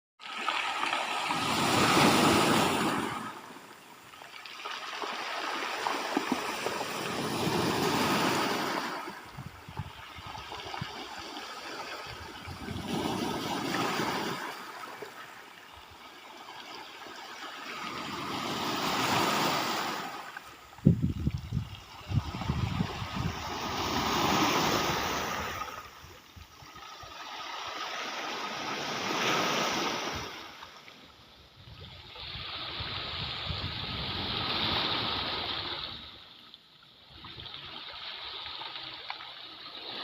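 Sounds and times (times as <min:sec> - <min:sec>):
sea waves washing in: 0:00.2 - 0:36.5.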